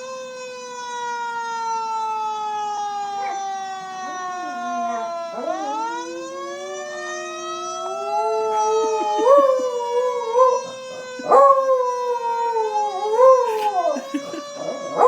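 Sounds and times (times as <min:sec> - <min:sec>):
fire truck siren: 0:00.0 - 0:15.0
dog howling: 0:03.0 - 0:15.0.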